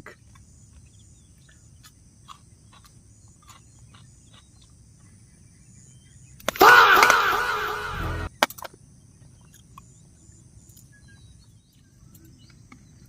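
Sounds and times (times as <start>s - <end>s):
loud sound with several pitches: 6.6s - 8.3s.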